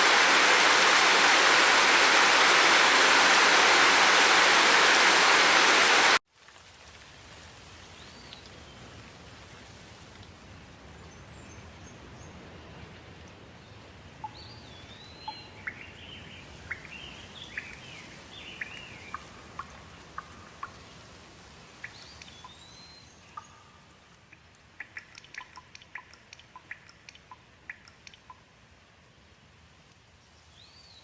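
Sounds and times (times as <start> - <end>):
steady light rain: 0.0 - 31.0
birds singing: 14.2 - 20.4.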